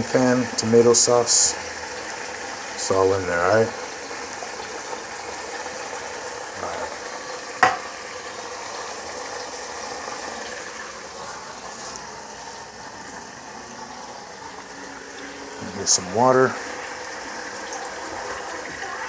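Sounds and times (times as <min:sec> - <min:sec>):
sauce sizzling and bubbling in a pot: 0:00.0 - 0:19.0.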